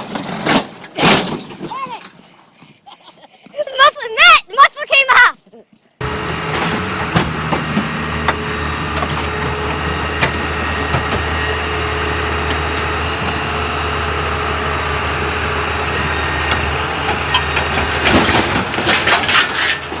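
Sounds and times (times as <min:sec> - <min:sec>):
heavy vehicle engine idling: 0:06.0 - 0:19.1.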